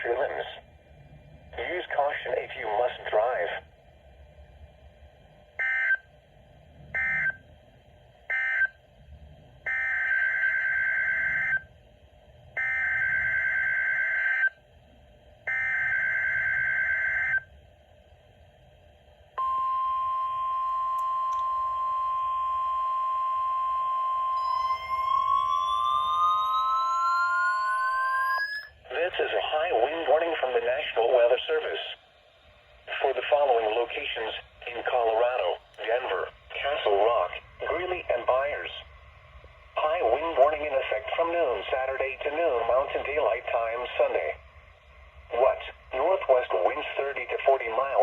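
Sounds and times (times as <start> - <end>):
steady warning alarm tone: 5.6 - 6.1, 6.9 - 7.4, 8.3 - 8.8, 9.7 - 11.7, 12.6 - 14.6, 15.5 - 17.5, 19.4 - 28.9.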